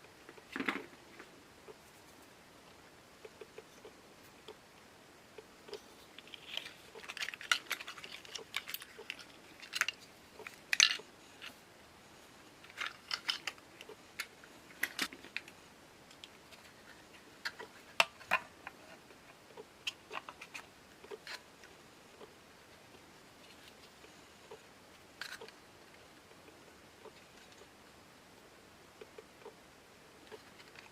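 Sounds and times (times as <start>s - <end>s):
lantern parts clicking and tapping: 6.2s - 11.6s, 12.6s - 15.5s, 16.1s - 21.4s.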